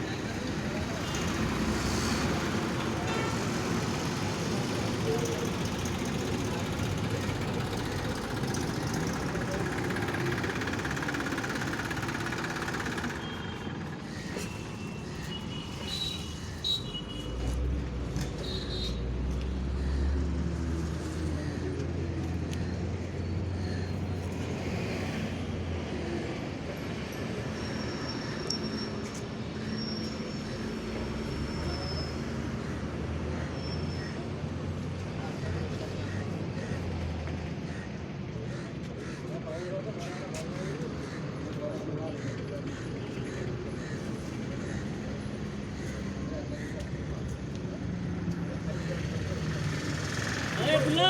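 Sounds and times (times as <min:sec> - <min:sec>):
road traffic noise: 0:00.0 - 0:51.0
vehicle engine running: 0:03.8 - 0:14.3.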